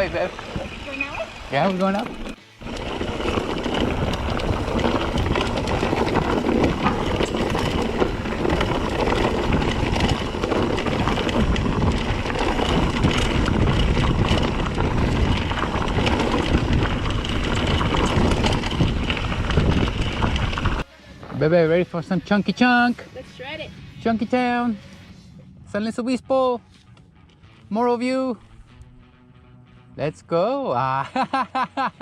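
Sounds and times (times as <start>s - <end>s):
bike rattling on rocky trail: 0.0s - 23.7s
wind on microphone: 2.1s - 21.4s.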